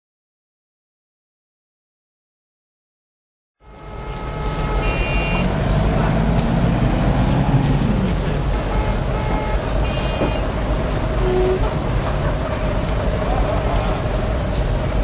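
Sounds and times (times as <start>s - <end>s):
heavy vehicle engine: 3.6s - 15.0s
rumble of passing traffic: 3.6s - 15.0s.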